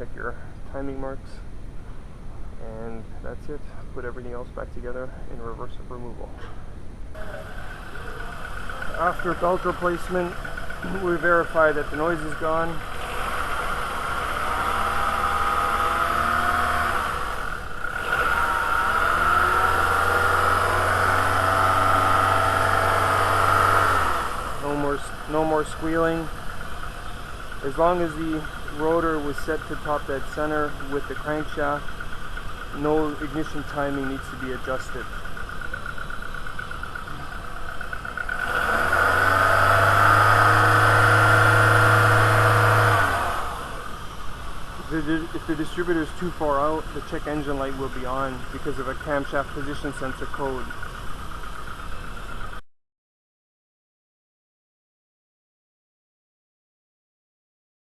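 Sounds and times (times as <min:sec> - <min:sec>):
car engine idling: 0:07.0 - 0:52.6.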